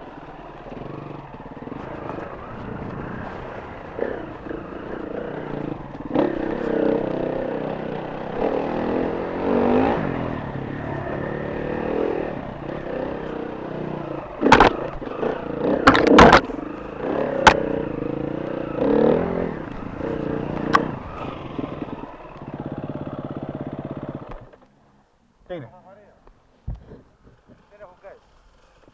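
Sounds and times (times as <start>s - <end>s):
motorcycle engine revving: 0.0s - 24.7s
sharp knocks and clatters: 14.4s - 15.1s, 15.8s - 16.5s.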